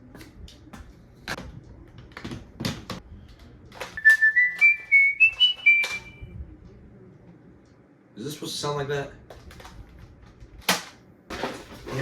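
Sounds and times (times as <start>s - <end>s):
rising whistle-like squeaks: 4.0s - 6.2s.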